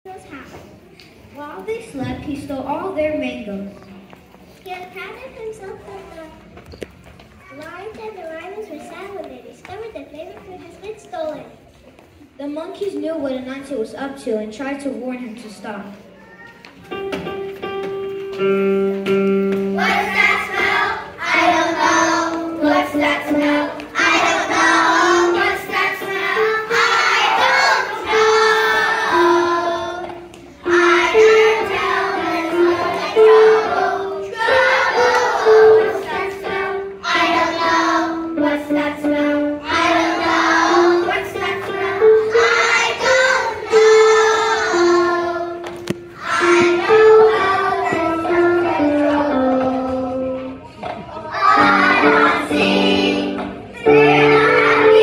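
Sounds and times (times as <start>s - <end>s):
young children singing: 19.5s - 55.0s.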